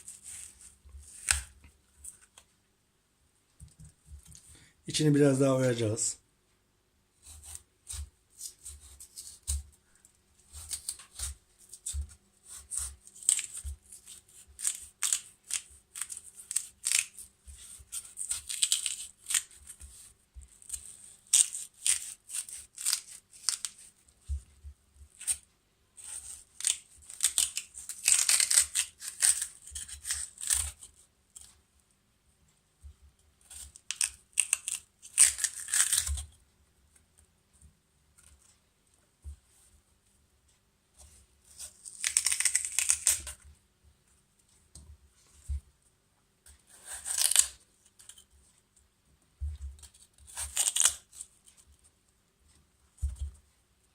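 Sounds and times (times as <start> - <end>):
knife scraping radish flesh: 0.0 - 2.3, 7.2 - 9.8, 10.4 - 24.4, 26.0 - 31.5, 33.4 - 36.3, 41.4 - 43.4, 46.7 - 48.3, 49.8 - 51.7.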